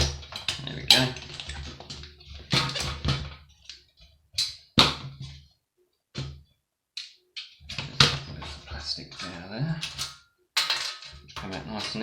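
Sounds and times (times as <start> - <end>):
electronics parts knocking and clattering: 7.0 - 12.0.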